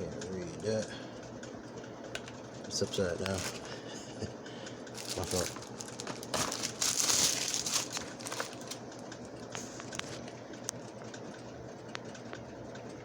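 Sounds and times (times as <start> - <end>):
plastic packaging crinkling: 2.8 - 3.8, 4.9 - 9.4.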